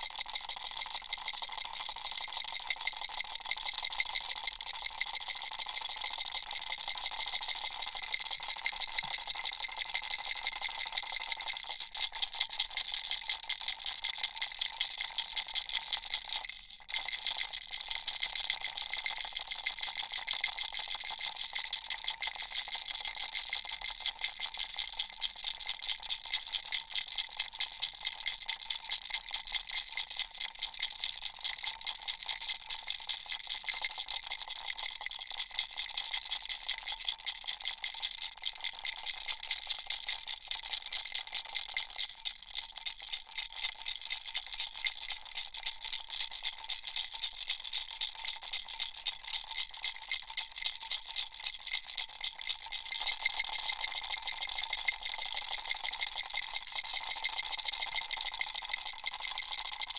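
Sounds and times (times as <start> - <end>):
baby rattle shaken: 0.0 - 14.6, 29.6 - 59.9.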